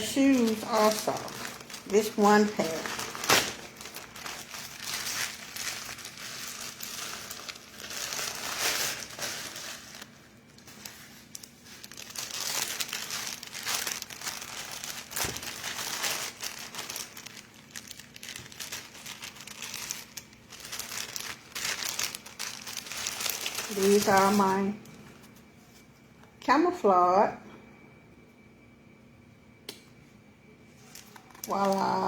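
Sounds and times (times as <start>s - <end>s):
packaging crinkling and tearing: 0.0s - 25.4s, 30.8s - 32.0s.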